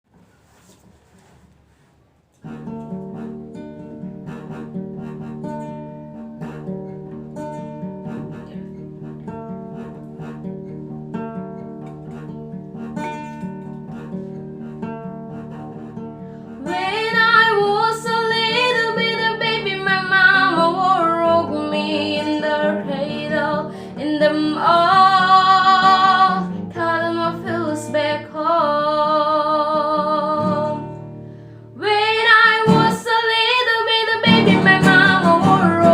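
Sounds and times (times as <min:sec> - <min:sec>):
acoustic guitar chords: 0:02.3 - 0:35.9
girl singing with vibrato: 0:16.6 - 0:31.0, 0:31.8 - 0:35.9.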